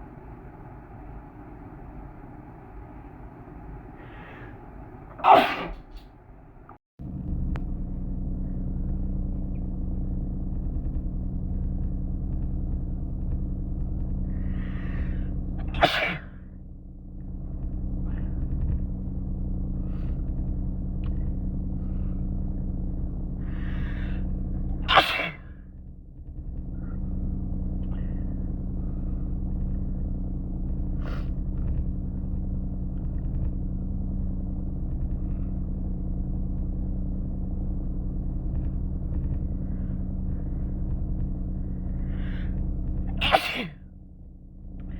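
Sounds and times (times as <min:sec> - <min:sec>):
steady low rumble: 0:00.0 - 0:44.9
drawn-in breath: 0:03.9 - 0:05.4
person sneezing: 0:05.1 - 0:06.0, 0:15.7 - 0:16.4, 0:24.8 - 0:25.5, 0:43.2 - 0:43.8.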